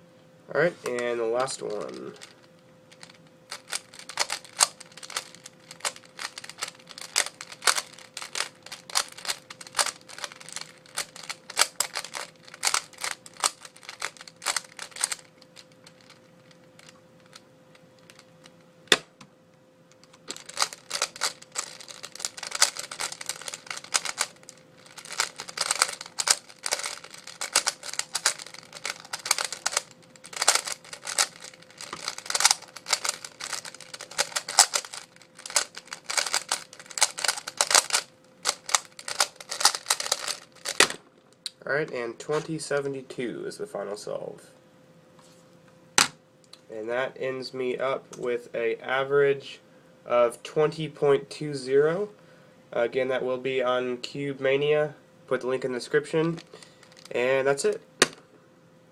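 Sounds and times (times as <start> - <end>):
puzzle cube clicking rapidly: 3.0 - 17.4, 20.0 - 40.9.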